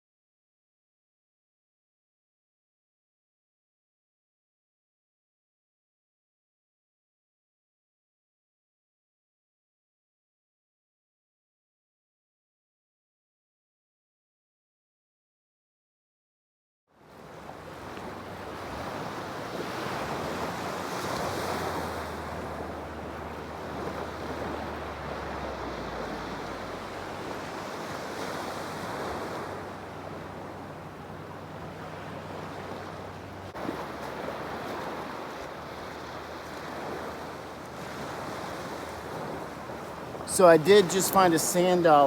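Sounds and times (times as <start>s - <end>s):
waves washing at shore: 17.0s - 42.0s
wind rushing over microphone: 18.1s - 42.0s.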